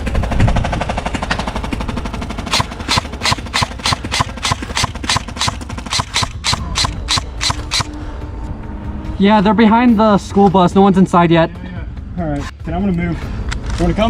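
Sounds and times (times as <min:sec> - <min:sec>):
airsoft guns firing: 0:01.2 - 0:08.0.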